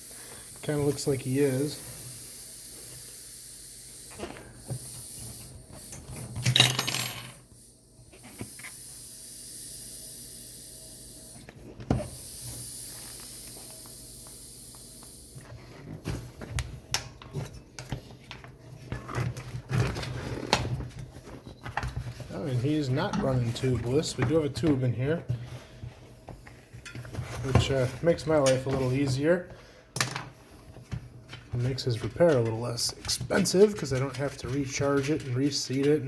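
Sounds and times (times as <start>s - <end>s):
air hissing from tire valve: 0.0s - 6.3s, 7.4s - 15.4s.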